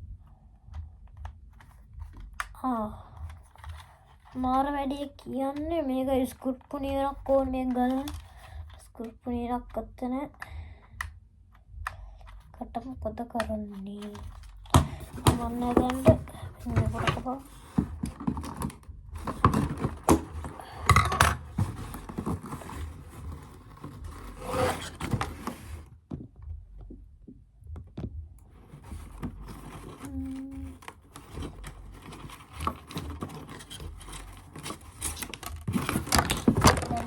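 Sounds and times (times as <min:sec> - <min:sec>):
handling packaging scrapes and knocks: 0:14.0 - 0:26.0, 0:28.4 - 0:37.0.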